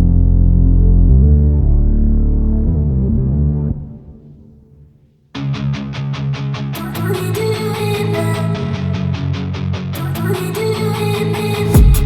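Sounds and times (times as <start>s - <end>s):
rock hip-hop guitar music: 5.3s - 12.0s
heavy drum hit: 11.8s - 12.0s.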